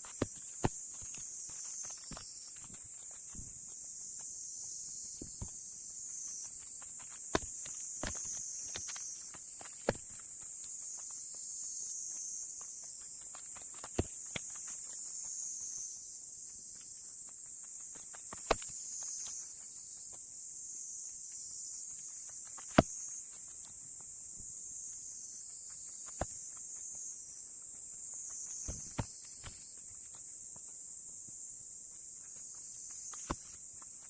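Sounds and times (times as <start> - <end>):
steady high-pitched hiss: 0.0 - 34.0
firewood logs knocking: 28.6 - 29.6.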